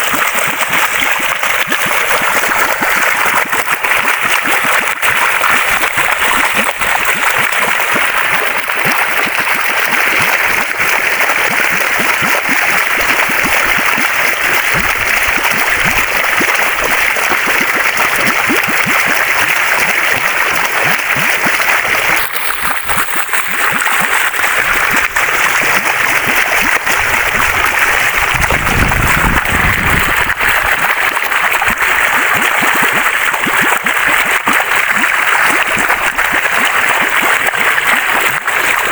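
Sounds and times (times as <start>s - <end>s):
waterfall rushing: 26.2s - 30.7s.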